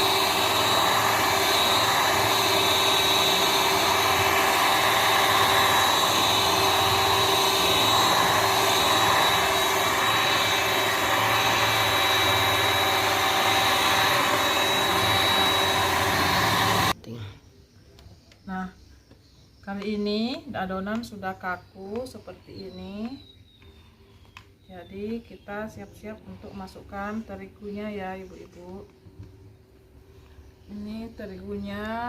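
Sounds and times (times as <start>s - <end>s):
electric mixer whine: 0.0s - 17.0s.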